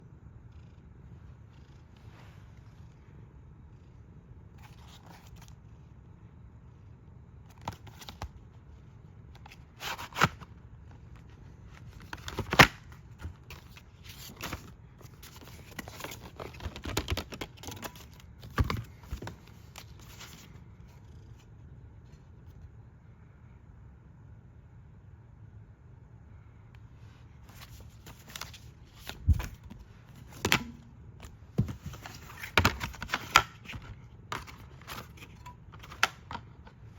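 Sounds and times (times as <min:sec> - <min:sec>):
plastic case handling crackles: 0:11.8 - 0:20.5, 0:27.5 - 0:36.8.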